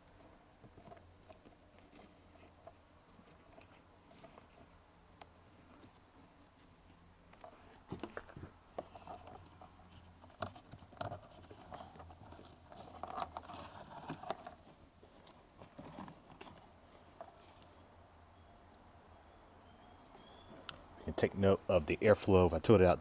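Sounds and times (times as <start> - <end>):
rustling scrapes: 5.5 - 17.8.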